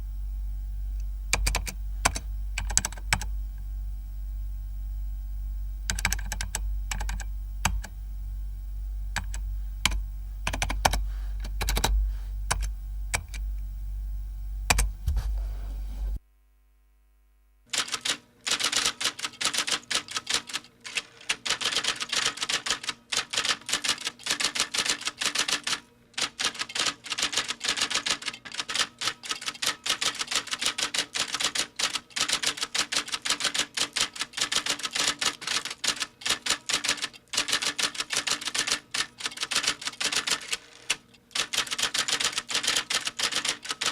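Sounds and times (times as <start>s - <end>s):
low steady hum: 0.0s - 17.6s
keyboard typing: 0.9s - 3.8s, 5.8s - 8.0s, 9.1s - 13.6s, 14.7s - 15.9s, 17.7s - 43.9s.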